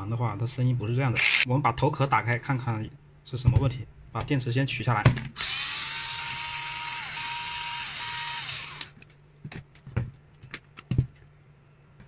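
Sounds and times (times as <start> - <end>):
power tool motor whining: 5.4 - 8.9.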